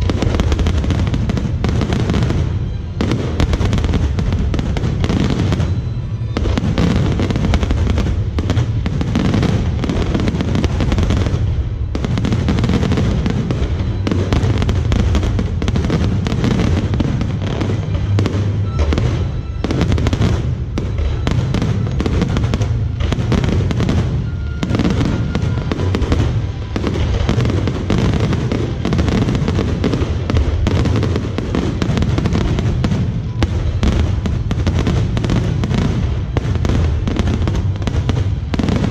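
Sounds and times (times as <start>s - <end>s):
fireworks bangs and crackles: 0.0s - 38.9s
music playing: 0.0s - 38.9s.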